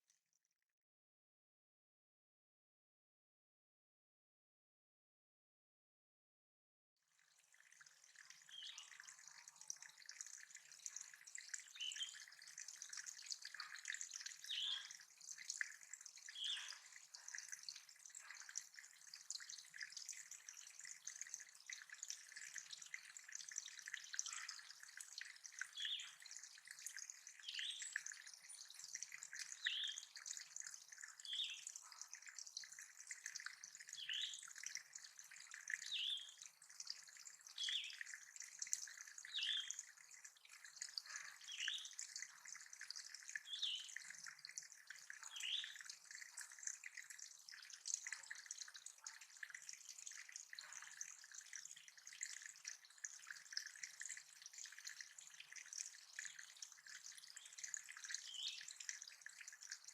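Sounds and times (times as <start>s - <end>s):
water trickling into a pond: 0.0s - 0.6s, 7.0s - 59.9s.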